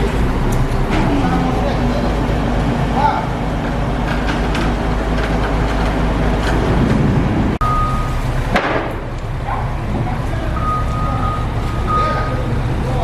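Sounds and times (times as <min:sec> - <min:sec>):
heavy crane engine running: 0:00.0 - 0:13.0
high warning beep: 0:07.6 - 0:08.3, 0:10.5 - 0:12.5.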